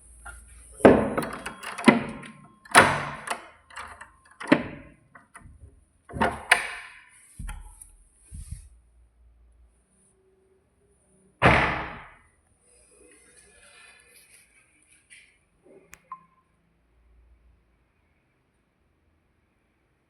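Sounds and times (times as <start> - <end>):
irregular knocks and thuds: 0.9 - 8.7.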